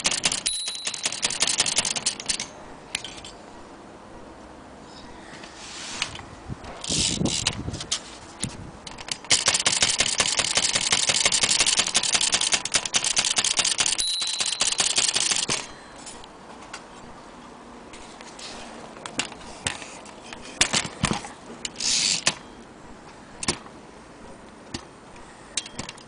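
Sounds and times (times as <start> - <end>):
typewriter key clacks: 0.0 - 2.5
typewriter margin bell: 0.0 - 2.5, 13.5 - 15.8.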